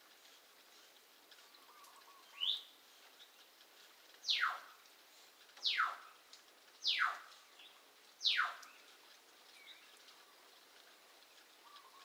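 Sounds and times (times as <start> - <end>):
pet bird calling shrilly: 4.3 - 4.6, 5.6 - 6.0, 6.8 - 7.3, 8.2 - 8.6.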